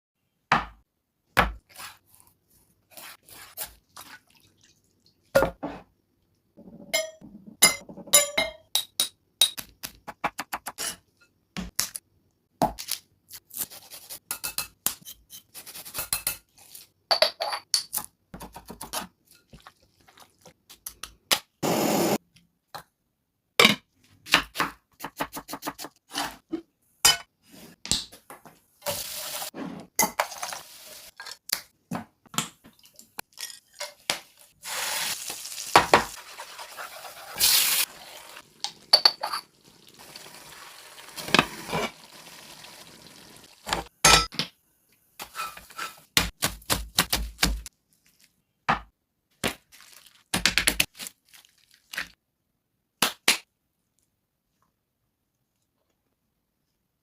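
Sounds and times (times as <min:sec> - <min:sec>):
utensils and pots clinking: 0:38.6 - 0:39.6.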